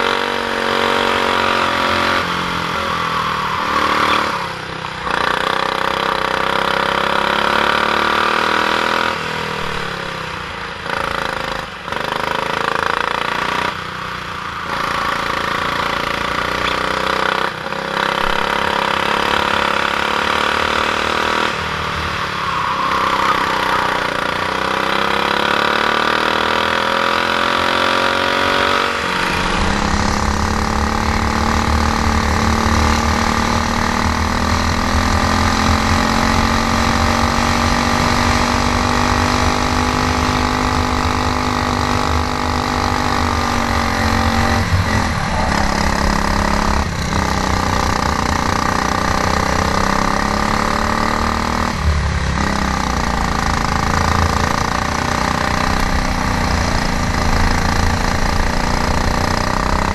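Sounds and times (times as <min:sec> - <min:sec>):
kart engine revving: 0:00.0 - 0:59.9.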